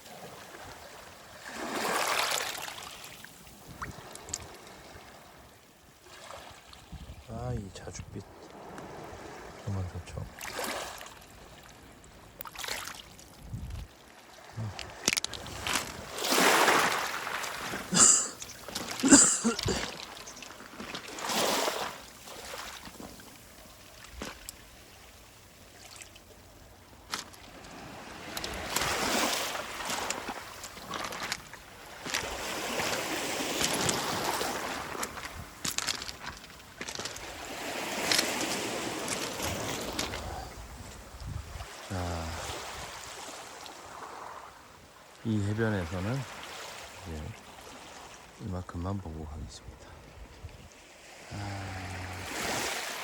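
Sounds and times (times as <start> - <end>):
waves on pebble beach: 0.0 - 6.9, 8.3 - 48.7, 49.9 - 53.0
stones clacking together: 14.6 - 16.0, 29.9 - 34.2, 34.9 - 40.2.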